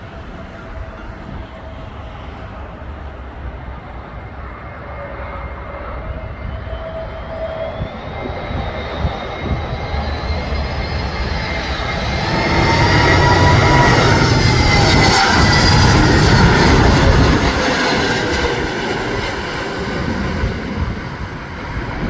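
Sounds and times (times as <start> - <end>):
jet engines whining: 0.0 - 22.0
wind buffeting microphone: 5.9 - 22.0.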